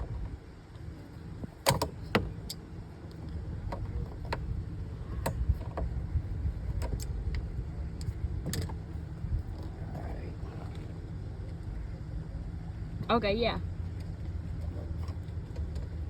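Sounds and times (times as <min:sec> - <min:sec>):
low steady rumble: 0:00.0 - 0:16.0
handling clicks and knocks: 0:01.5 - 0:02.6, 0:03.2 - 0:06.0, 0:06.6 - 0:08.8.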